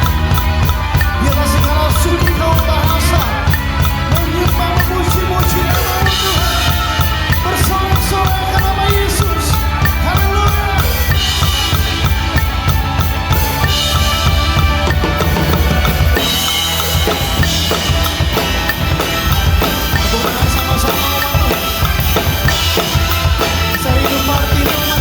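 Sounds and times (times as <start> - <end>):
fast rock drumming: 0.0 - 25.0
rock backing track: 0.0 - 25.0.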